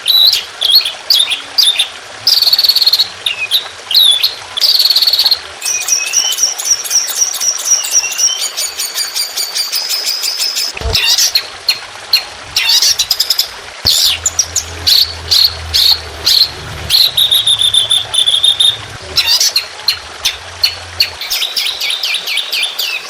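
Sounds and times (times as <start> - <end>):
songbird whistled notes: 0.1 - 11.1, 13.9 - 19.6
buzzy bird phrases: 12.1 - 22.1
fast high bird trill: 12.6 - 22.1
low sliding bird whistle: 13.9 - 22.0.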